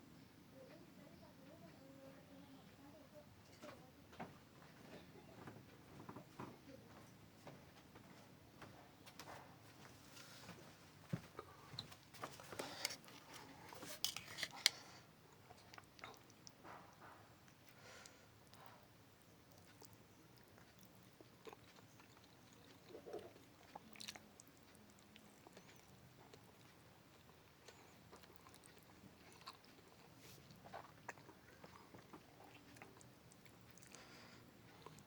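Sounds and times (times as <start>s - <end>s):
close-up chewing: 9.7s - 35.0s.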